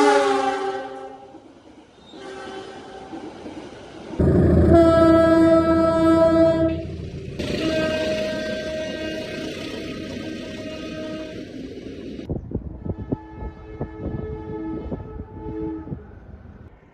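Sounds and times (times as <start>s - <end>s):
train air horn blasts: 0.0s - 1.3s, 2.1s - 3.2s, 4.2s - 12.0s, 12.8s - 16.0s
heavy low rumble: 4.2s - 10.6s.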